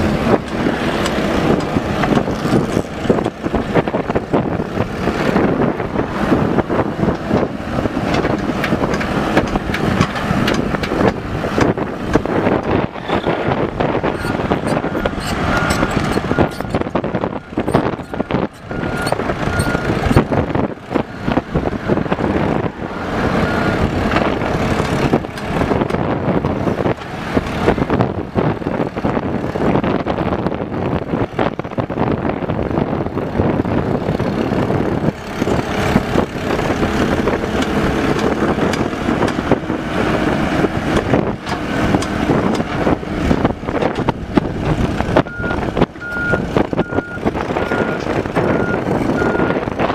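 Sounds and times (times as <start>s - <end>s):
excavator engine under load: 0.0s - 49.9s
metal clanks and knocks: 7.1s - 12.3s.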